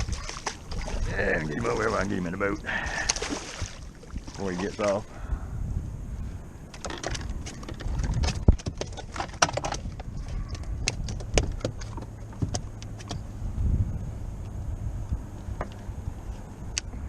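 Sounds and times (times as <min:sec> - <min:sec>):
wind rumble on microphone: 0:00.0 - 0:17.0
fishing gear clattering in boat: 0:06.7 - 0:13.3.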